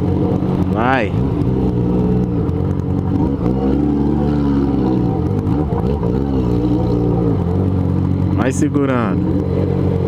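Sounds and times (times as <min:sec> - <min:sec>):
motorcycle engine revving: 0:00.0 - 0:10.0.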